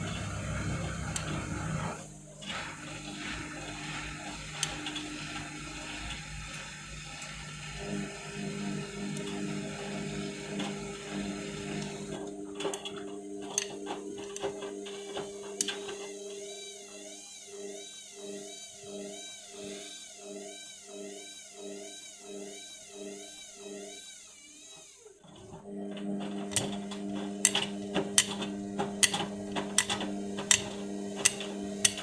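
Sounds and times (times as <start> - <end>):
washing machine motor whining hum: 0.0 - 32.0
washing machine clicks and knocks: 25.9 - 32.0.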